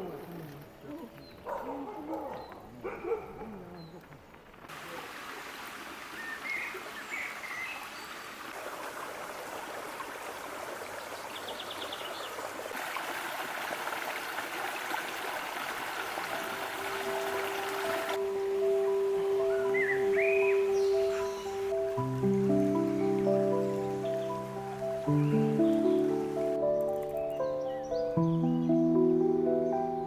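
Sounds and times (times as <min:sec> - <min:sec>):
mountain stream rushing: 0:04.7 - 0:26.7.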